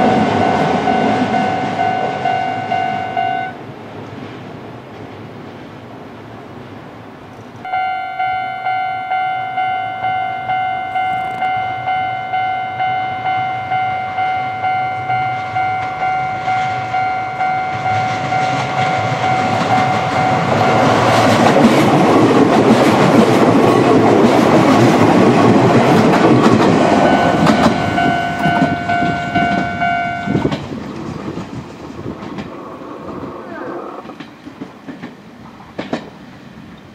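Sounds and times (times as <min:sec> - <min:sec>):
crossing alarm bell ringing: 0:00.0 - 0:03.6, 0:07.7 - 0:21.4, 0:26.0 - 0:30.6
electric train passing: 0:00.0 - 0:36.9.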